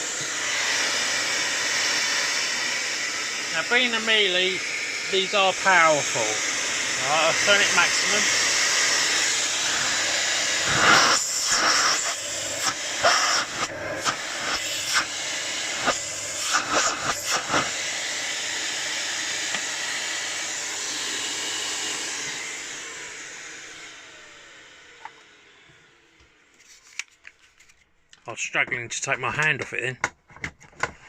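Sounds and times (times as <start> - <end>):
vacuum cleaner running: 0.0 - 26.5.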